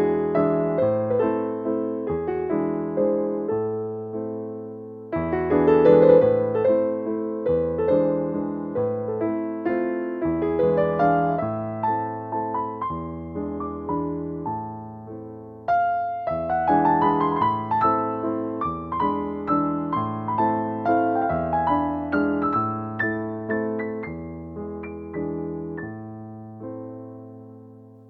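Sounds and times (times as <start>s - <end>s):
soft slow piano piece: 0.0s - 28.0s.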